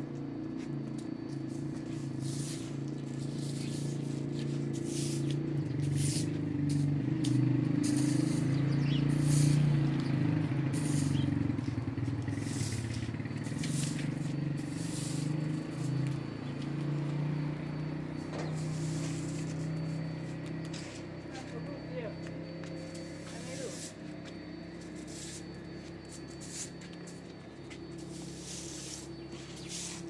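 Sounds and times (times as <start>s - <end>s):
low engine drone: 0.0s - 30.0s
short scraping strokes: 1.5s - 10.0s, 10.7s - 11.3s, 12.2s - 16.2s, 18.3s - 20.0s, 27.9s - 30.0s.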